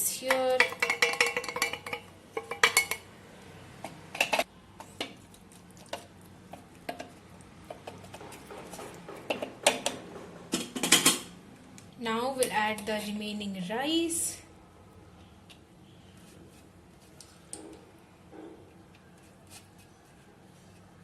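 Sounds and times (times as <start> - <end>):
spoon clinking against a bowl: 0.3 - 3.0.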